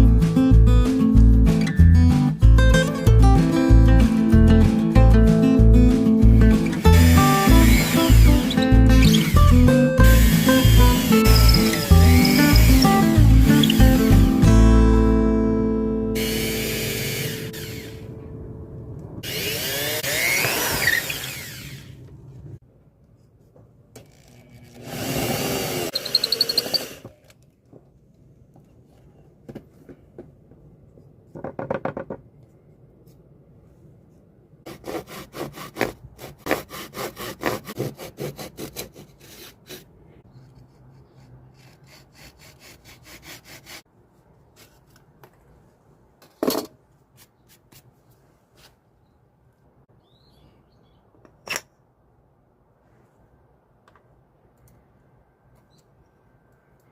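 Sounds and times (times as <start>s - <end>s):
power tool running: 6.6s - 14.4s, 16.2s - 18.1s, 19.2s - 22.0s, 24.8s - 27.0s.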